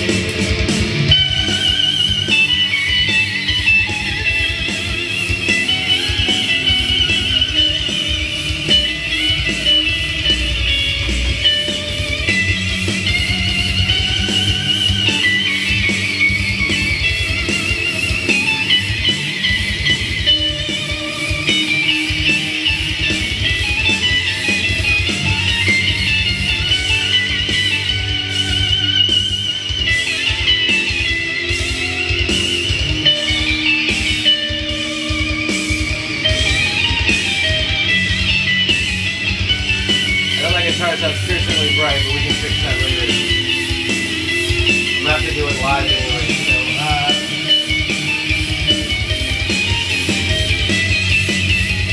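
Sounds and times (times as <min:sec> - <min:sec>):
electric guitar lead with vibrato: 0:00.0 - 0:51.9
rock backing track with beat: 0:00.0 - 0:51.9.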